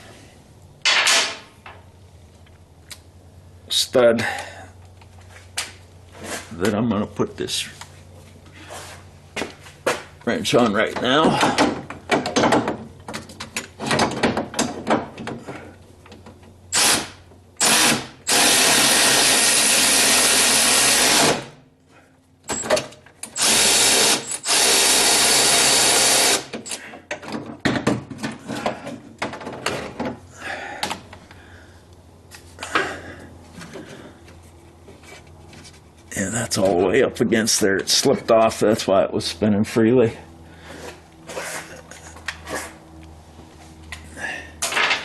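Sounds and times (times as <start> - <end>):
powered ratchet wrench running: 16.7 - 21.4, 23.3 - 26.5.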